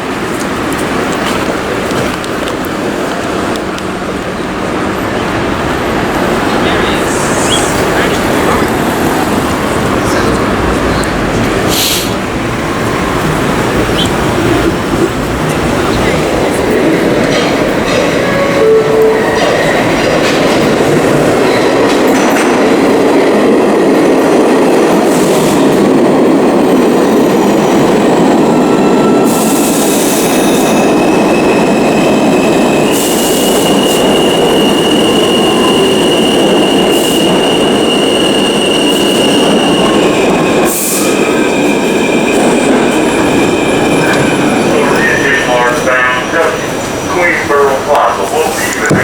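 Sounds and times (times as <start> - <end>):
train wheels rumbling on track: 0.0 - 49.0
short hisses: 11.7 - 12.2.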